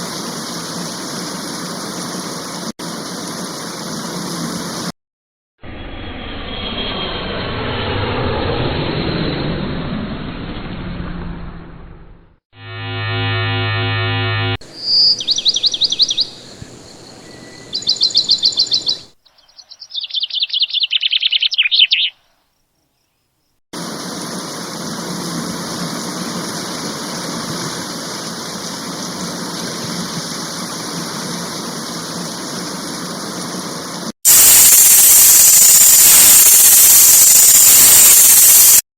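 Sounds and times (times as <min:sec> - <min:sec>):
low buzzing hum: 0:12.6 - 0:14.6
birds chirping trills: 0:14.7 - 0:22.4
steady hiss: 0:23.8 - 0:38.8
loud static: 0:34.3 - 0:38.8.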